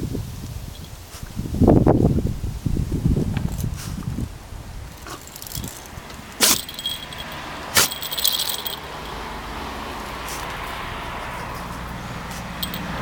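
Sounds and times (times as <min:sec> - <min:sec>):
light metallic jingle: 0:04.9 - 0:09.5, 0:12.5 - 0:13.0
dog sneezing: 0:06.4 - 0:06.7, 0:07.8 - 0:08.0.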